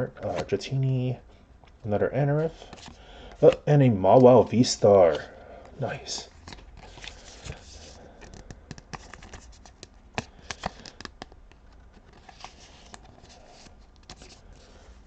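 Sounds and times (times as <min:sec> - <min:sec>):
trading cards clicking and tapping: 0:08.2 - 0:09.4, 0:10.1 - 0:11.6.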